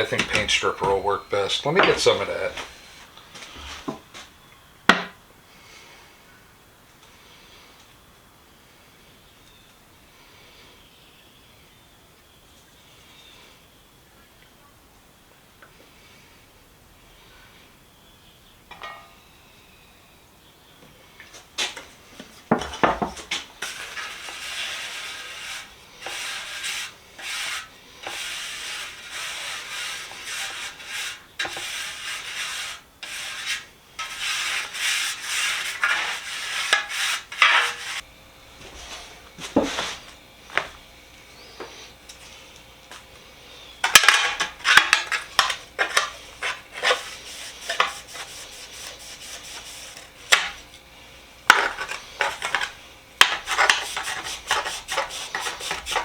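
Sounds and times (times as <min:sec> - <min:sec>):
hand scrubbing on steel box: 0:23.6 - 0:38.0, 0:43.8 - 0:50.7, 0:51.5 - 0:56.0.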